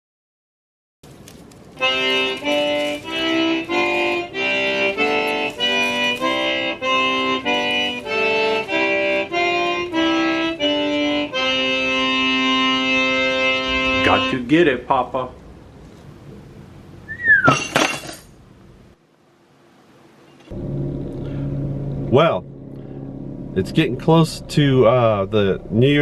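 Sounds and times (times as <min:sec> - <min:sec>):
instrumental music with held chords: 0:01.8 - 0:14.4.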